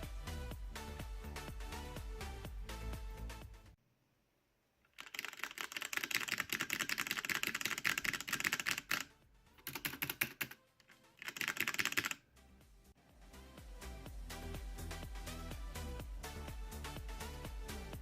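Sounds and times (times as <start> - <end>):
fast typing on mechanical keyboard: 4.9 - 10.6, 11.2 - 12.2.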